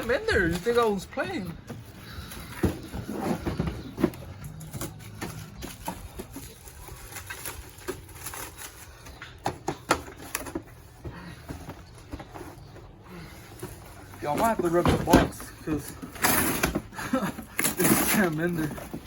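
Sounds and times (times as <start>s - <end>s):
cardboard box scraping and knocking: 1.7s - 4.3s.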